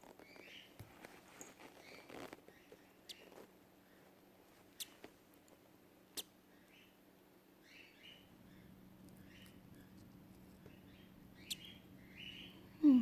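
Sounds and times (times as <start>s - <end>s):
low steady hum: 0.1s - 13.0s
bird chick peeping: 0.2s - 0.8s, 7.6s - 12.8s.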